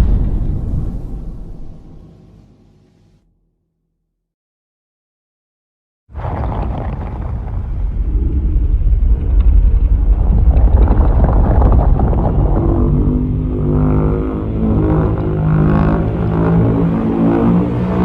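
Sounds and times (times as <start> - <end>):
heavy deep rumble: 0.0 - 3.2, 6.2 - 18.0
steady pitched drone: 12.4 - 18.0.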